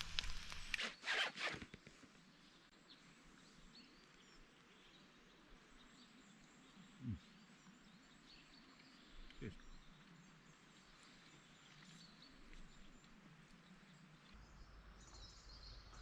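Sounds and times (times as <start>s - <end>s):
faint bird chirps: 6.0s - 10.1s.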